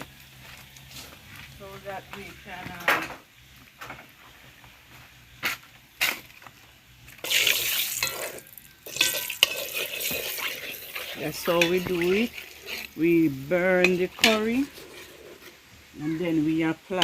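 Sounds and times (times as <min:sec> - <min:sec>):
curry sizzling in hot oil: 0:05.2 - 0:17.0.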